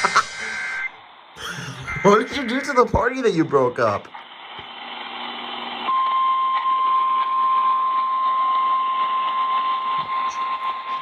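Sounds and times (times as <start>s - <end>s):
steady high alert tone: 1.4s - 3.1s.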